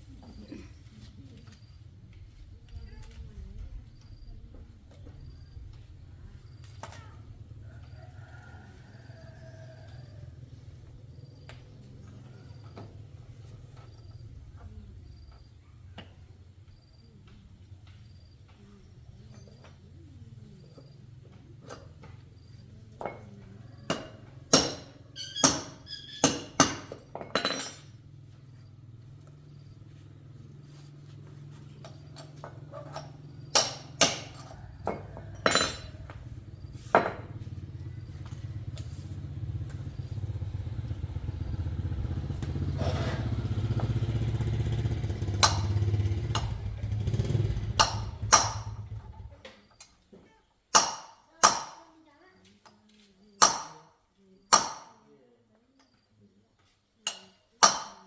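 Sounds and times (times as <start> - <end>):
small motorcycle engine running: 27.8 - 49.4.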